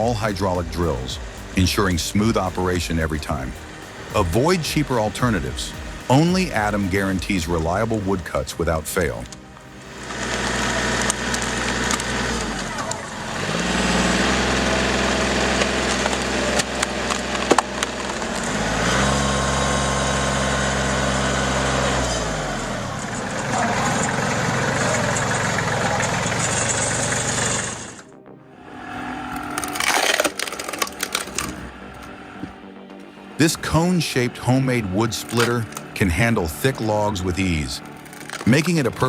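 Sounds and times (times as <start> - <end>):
machine engine revving under load: 0.0 - 39.0
wood cracking and splintering: 15.4 - 19.3, 29.4 - 32.5, 35.1 - 39.0.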